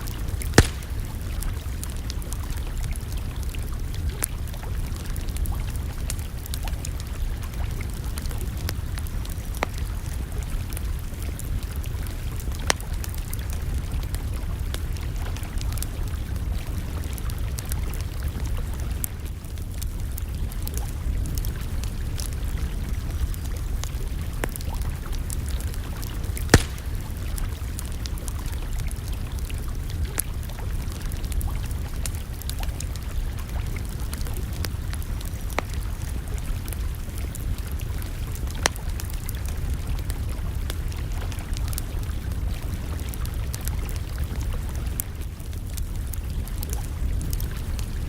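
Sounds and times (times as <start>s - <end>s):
sharp fire pops: 0.0s - 2.4s, 25.5s - 28.3s
campfire crackling: 0.0s - 48.0s.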